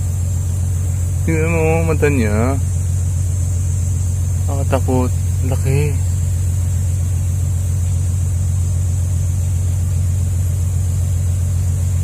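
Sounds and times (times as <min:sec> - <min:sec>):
high-pitched hiss: 0:00.0 - 0:12.0
loud mechanical low hum: 0:00.0 - 0:12.0.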